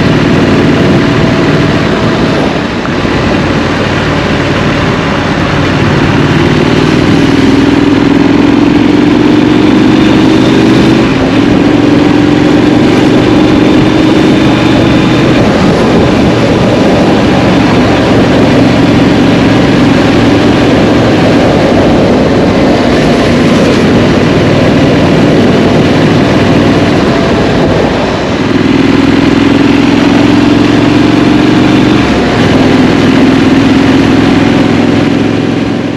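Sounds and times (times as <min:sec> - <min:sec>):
motorcycle engine revving: 0:00.0 - 0:35.9
wind and road noise: 0:00.0 - 0:35.9.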